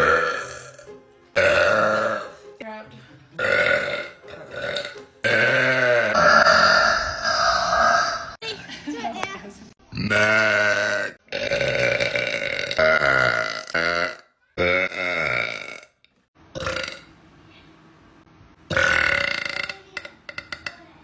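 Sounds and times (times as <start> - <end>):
woman burping: 0.0 - 2.4, 3.4 - 8.4, 10.0 - 16.0, 18.7 - 20.8.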